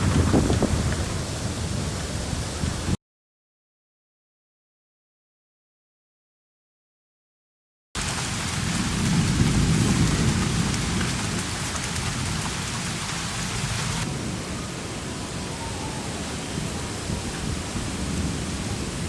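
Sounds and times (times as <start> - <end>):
heavy rain: 0.0 - 3.0, 8.0 - 19.0
thunder rumble: 0.0 - 3.0, 8.0 - 19.0.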